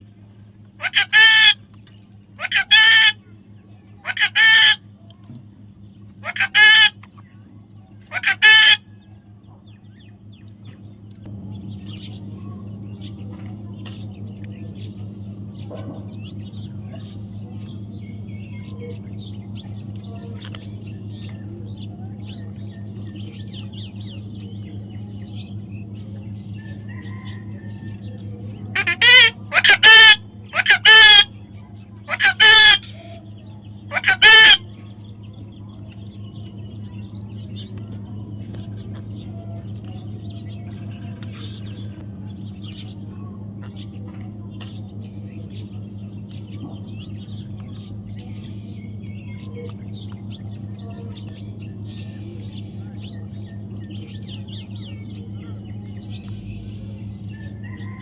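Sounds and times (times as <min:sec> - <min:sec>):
faint chirps: 0:00.0 - 0:58.0
low electrical hum: 0:00.0 - 0:58.0
parrots chirping: 0:00.8 - 0:01.6, 0:02.4 - 0:03.2, 0:04.0 - 0:04.8, 0:06.2 - 0:07.0, 0:08.0 - 0:08.8, 0:28.7 - 0:31.3, 0:32.0 - 0:34.8.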